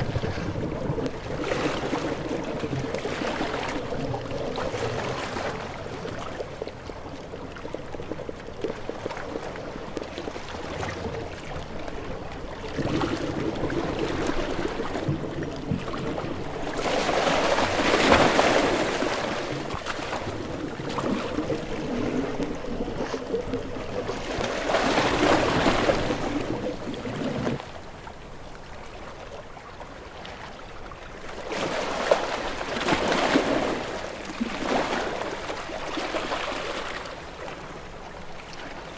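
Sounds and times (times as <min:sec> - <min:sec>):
water splashing and rushing: 0:00.0 - 0:28.4.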